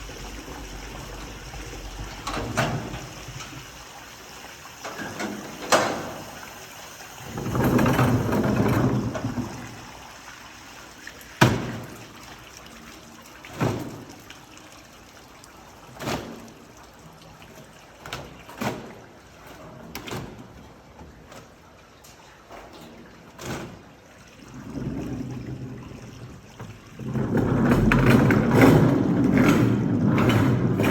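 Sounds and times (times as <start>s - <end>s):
washing machine knocking: 0.0s - 3.9s, 4.8s - 10.0s, 11.4s - 12.2s, 24.6s - 30.9s
water trickling: 0.0s - 30.9s.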